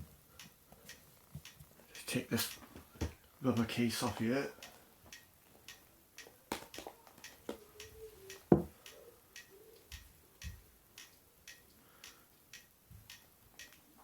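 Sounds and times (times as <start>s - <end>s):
clock ticking: 0.0s - 14.0s
phone case handling knocks: 8.5s - 8.7s.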